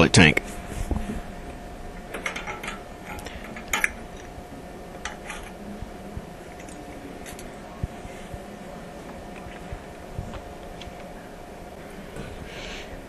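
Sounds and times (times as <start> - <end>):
faint steady hum: 0.0 - 13.0
clinks of hard objects handled: 2.1 - 4.3.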